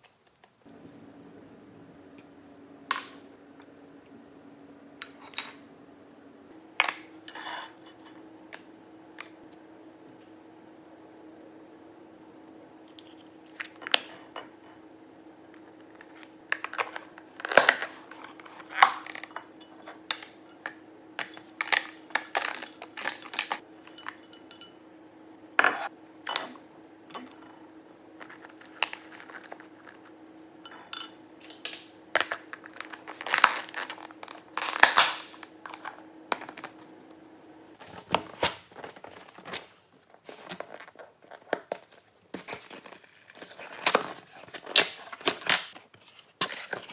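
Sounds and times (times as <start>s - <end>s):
steady low hum: 0.6s - 37.8s
dishes and utensils clattering: 18.9s - 24.8s, 30.6s - 31.6s
packaging crinkling: 31.6s - 36.7s.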